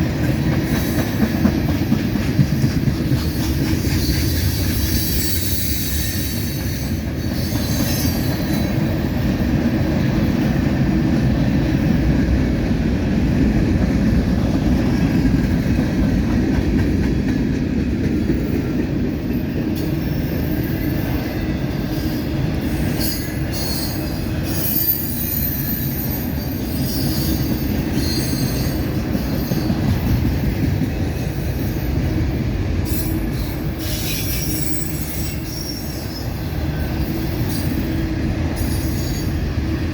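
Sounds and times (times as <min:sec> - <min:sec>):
steel wheels rumbling on rails: 0:00.0 - 0:39.9
high-pitched wheel squeals: 0:04.1 - 0:08.7, 0:21.9 - 0:29.7, 0:32.9 - 0:37.8.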